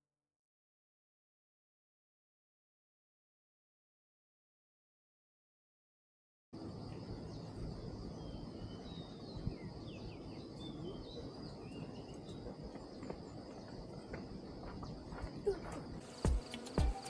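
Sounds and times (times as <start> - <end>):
high insect drone: 6.6 - 17.0.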